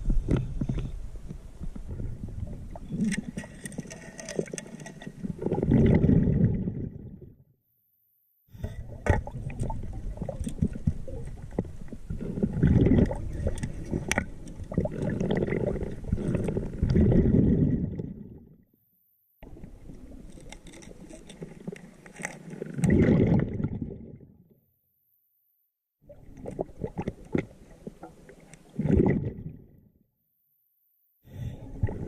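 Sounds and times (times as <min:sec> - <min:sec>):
underwater bubbles gurgling: 0:00.0 - 0:07.4, 0:08.6 - 0:18.6, 0:19.4 - 0:24.5, 0:26.0 - 0:29.8, 0:31.3 - 0:32.0.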